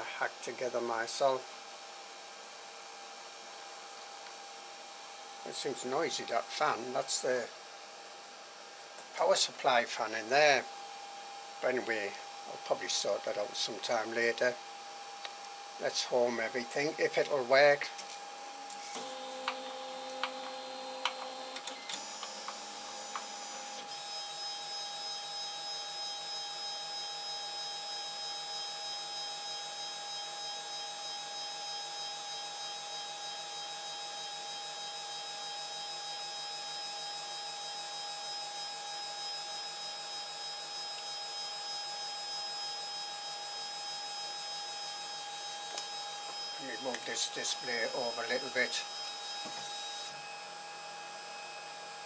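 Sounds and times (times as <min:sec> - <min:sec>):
power supply fan: 0:09.0 - 0:23.9.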